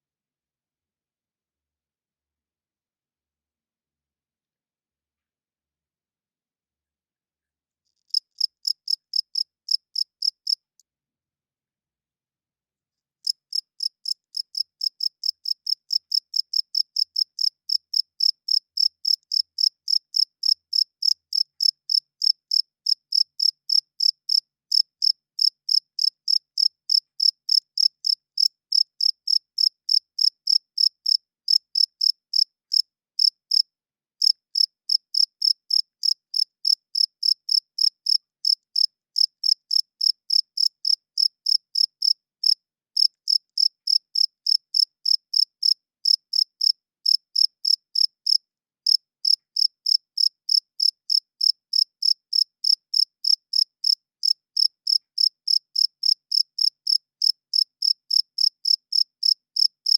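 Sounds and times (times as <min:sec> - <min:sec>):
cricket chirping: 0:13.2 - 0:33.6, 0:34.2 - 0:59.9.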